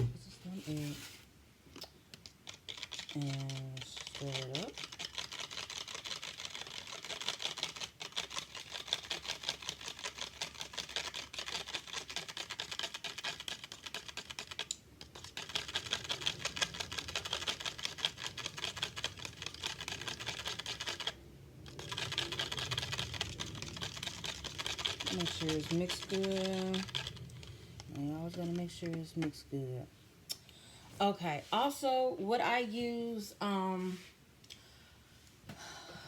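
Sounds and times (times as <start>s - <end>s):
utensil beating egg in bowl: 2.3s - 29.2s.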